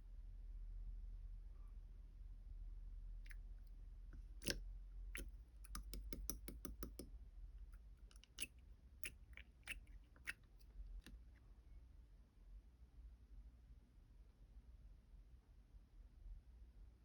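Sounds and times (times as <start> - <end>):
light clicks and taps: 5.2 - 7.1.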